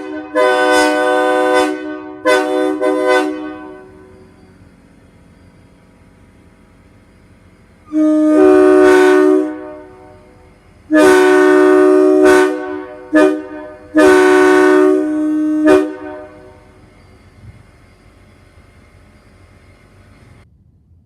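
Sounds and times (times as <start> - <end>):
locomotive air horn: 0.0 - 4.4, 7.8 - 16.8.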